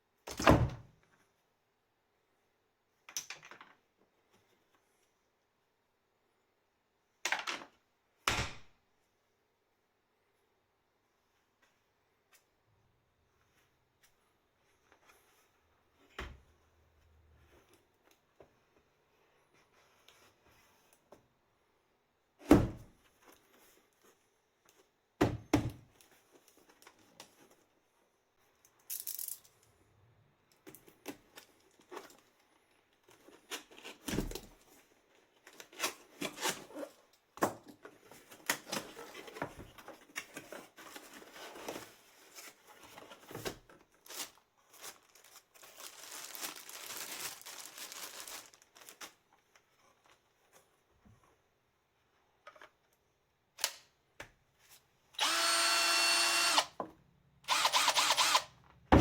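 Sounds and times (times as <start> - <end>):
packaging rustling and tearing: 43.9 - 49.2.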